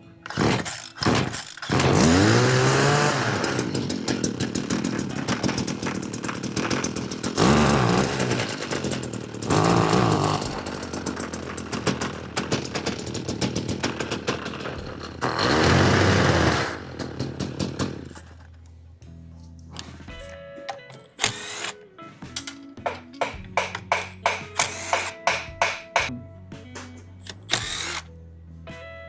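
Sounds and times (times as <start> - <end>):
pole saw engine idling and revving: 0.2 - 18.5, 21.2 - 21.8, 23.2 - 26.1, 27.2 - 28.1.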